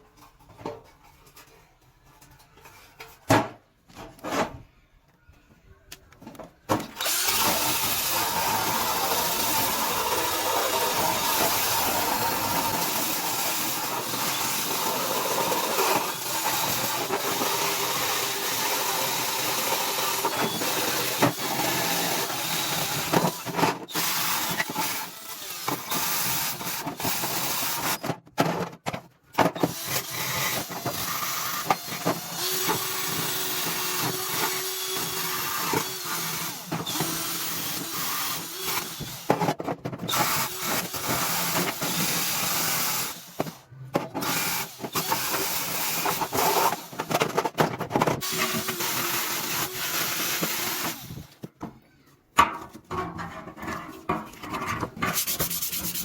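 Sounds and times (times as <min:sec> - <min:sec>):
power tool running: 0:07.0 - 0:28.0, 0:48.2 - 0:51.3.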